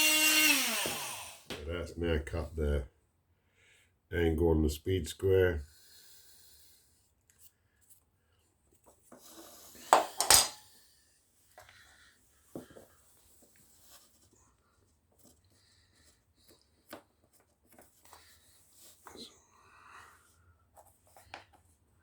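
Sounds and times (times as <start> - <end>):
tools clattering: 10.0 - 10.6.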